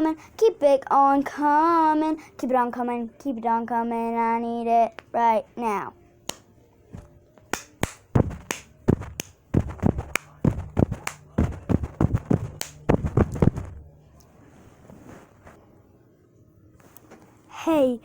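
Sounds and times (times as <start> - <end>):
sharp taps and knocks: 7.0 - 13.8.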